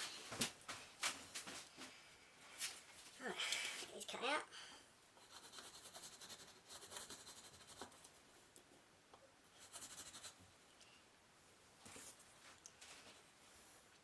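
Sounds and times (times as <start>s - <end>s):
faint scratching on a surface: 5.2s - 8.2s, 9.6s - 10.4s.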